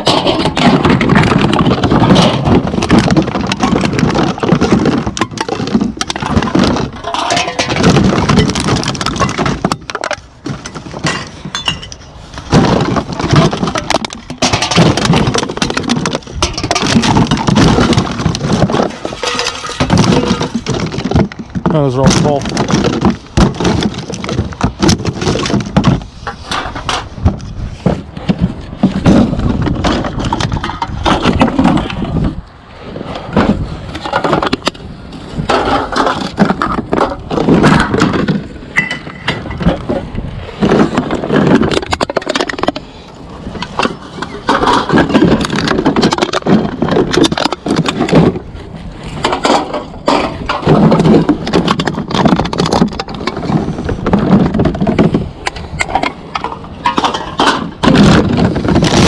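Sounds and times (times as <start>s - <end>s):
cans clattering and crinkling: 0.0s - 27.0s, 40.8s - 42.8s.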